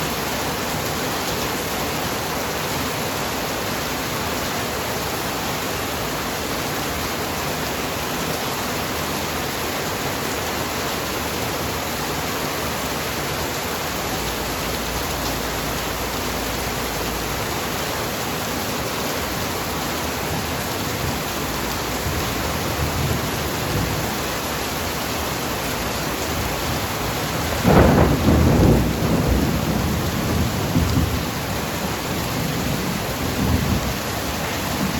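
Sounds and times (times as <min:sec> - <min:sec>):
heavy rain pouring: 0:00.0 - 0:34.9
low thunder rumbles: 0:26.4 - 0:34.0
loud thunder clap: 0:27.4 - 0:31.2.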